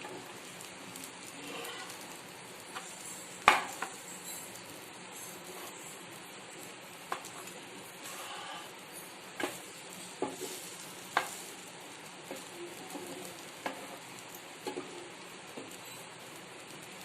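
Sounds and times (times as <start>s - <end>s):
food sizzling in a pan: 0.0s - 17.0s
utensil tapping and scraping pan: 10.2s - 11.4s.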